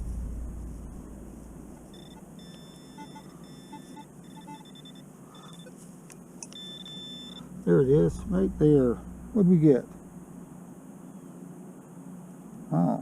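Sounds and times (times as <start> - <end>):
metal detector beeping: 1.7 - 5.8, 6.4 - 7.5.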